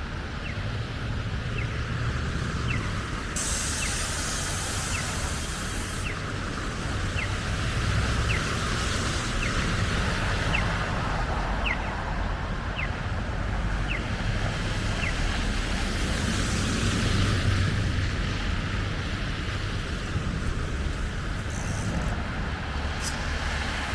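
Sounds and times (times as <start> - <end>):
rumble of passing vehicles: 0.0 - 23.9
tyres hissing on wet road: 2.5 - 11.2, 14.8 - 23.9.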